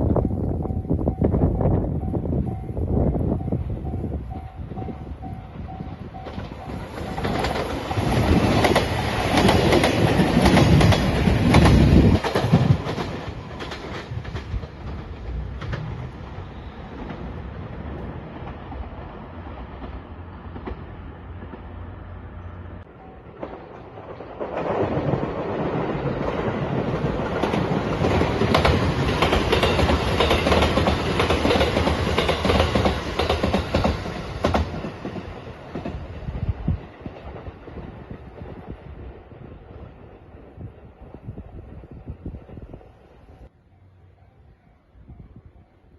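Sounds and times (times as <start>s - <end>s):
train wheels clattering over rail joints: 6.2s - 21.8s, 23.3s - 38.6s.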